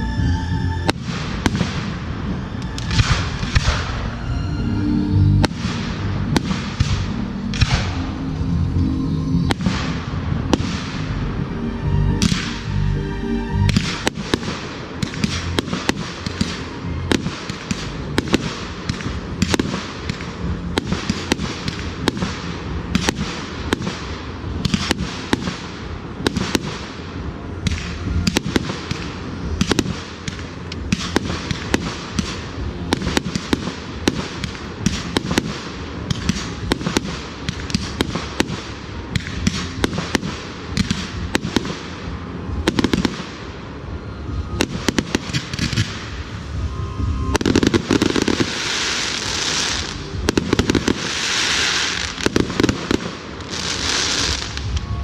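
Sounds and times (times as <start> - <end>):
music: 0.0 - 55.0
fireworks bangs and crackles: 0.8 - 4.4, 5.2 - 11.6, 12.2 - 12.9, 13.6 - 55.0.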